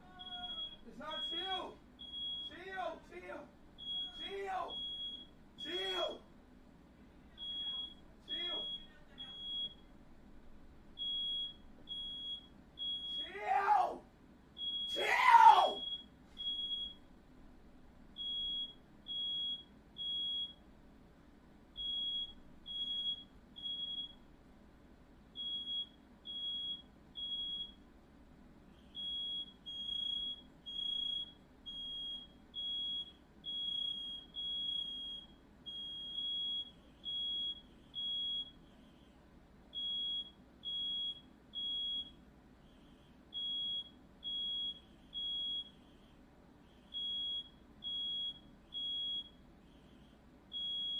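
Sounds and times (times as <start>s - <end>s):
smoke alarm beeping: 0.1s - 2.8s, 3.8s - 6.3s, 7.4s - 10.0s, 10.9s - 13.4s, 14.6s - 17.1s, 18.2s - 20.7s, 21.7s - 24.3s, 25.3s - 27.8s, 28.7s - 39.1s, 39.7s - 50.9s.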